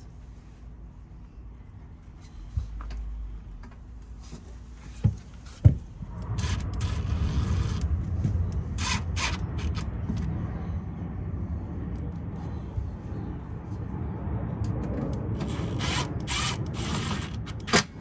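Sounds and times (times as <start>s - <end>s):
low rumble: 5.8s - 17.3s
high-pitched whine: 6.0s - 14.0s, 15.2s - 17.8s.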